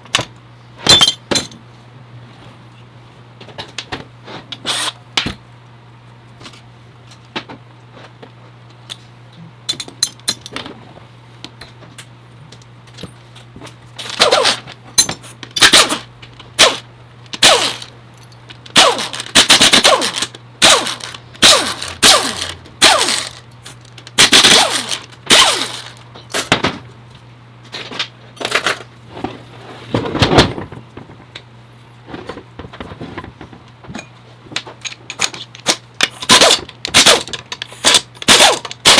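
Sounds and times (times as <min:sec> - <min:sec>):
steady low hum: 0:00.0 - 0:38.9
short rattling bursts: 0:14.0 - 0:14.8, 0:15.6 - 0:26.5, 0:35.6 - 0:38.9.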